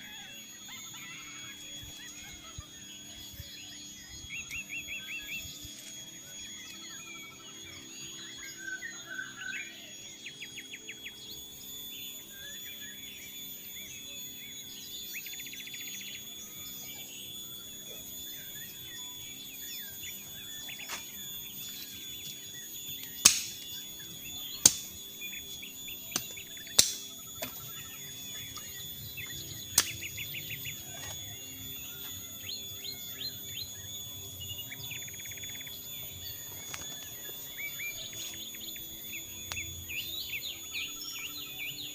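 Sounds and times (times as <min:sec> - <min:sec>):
birds chirping and trilling: 0:00.0 - 0:41.9
high-pitched insect drone: 0:00.0 - 0:41.9
sharp knocks or snaps: 0:23.2 - 0:23.6, 0:26.8 - 0:27.0.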